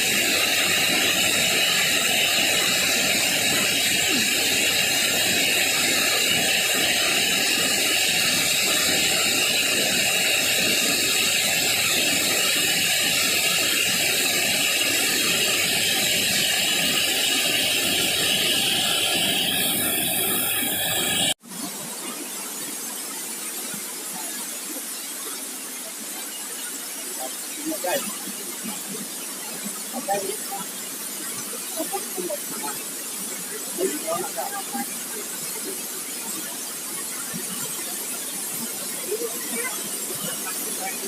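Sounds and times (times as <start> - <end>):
waterfall rushing: 0.0 - 21.4.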